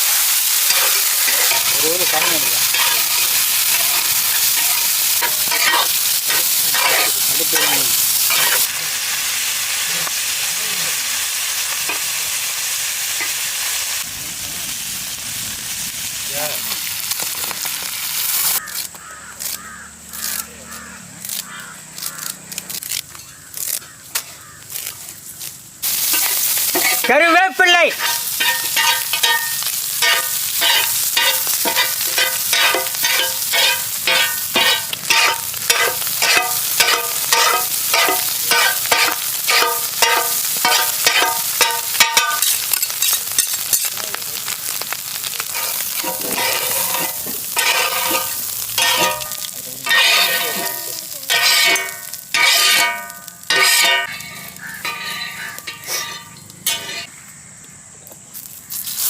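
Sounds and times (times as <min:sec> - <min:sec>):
oil sizzling: 0:00.0 - 0:57.1, 0:58.3 - 0:59.0
spatula scraping a pan: 0:00.3 - 0:08.7, 0:25.9 - 0:27.2, 0:27.9 - 0:43.9, 0:45.4 - 0:57.1.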